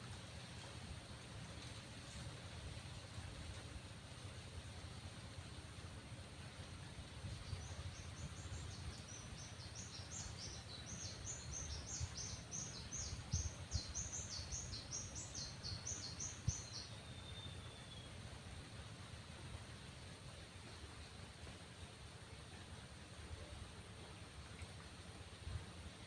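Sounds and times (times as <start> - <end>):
bird chirping: 7.5 - 18.1.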